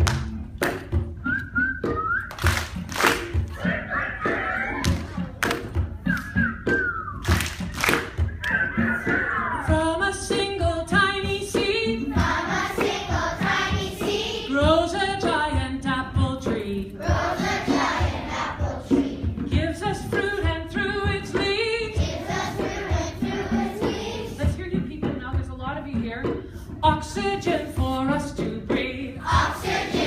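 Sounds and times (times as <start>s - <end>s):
voices singing together: 3.6s - 5.3s, 8.4s - 10.4s, 11.5s - 14.6s, 17.0s - 20.5s, 21.8s - 24.4s, 28.7s - 30.0s.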